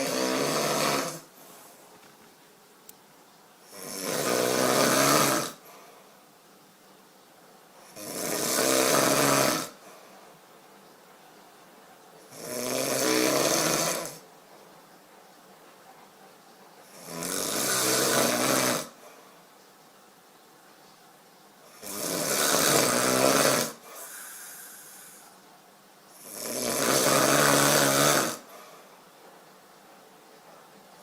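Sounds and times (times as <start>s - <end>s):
man snoring: 0.0s - 1.3s, 3.7s - 5.6s, 7.9s - 9.8s, 12.3s - 14.2s, 16.9s - 19.0s, 21.7s - 25.3s, 26.2s - 28.5s
quiet breathing: 5.5s - 6.4s, 9.7s - 12.2s, 18.8s - 19.9s, 23.7s - 26.3s, 28.4s - 31.0s.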